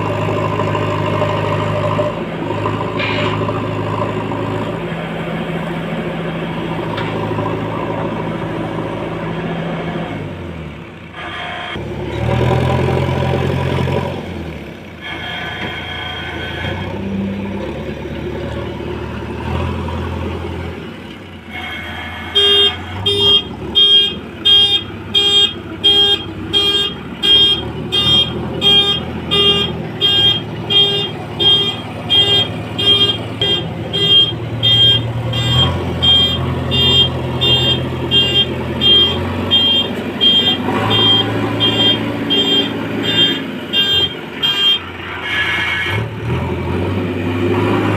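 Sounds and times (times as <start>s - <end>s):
diesel engine running: 0.0s - 47.9s
reversing alarm beeping: 15.0s - 17.0s, 21.6s - 44.9s.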